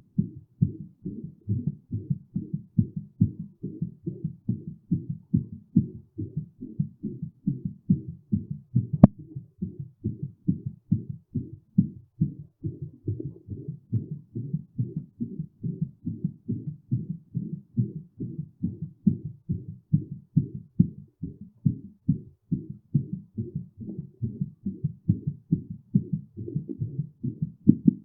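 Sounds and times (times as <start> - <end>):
heartbeat: 0.0 - 28.0.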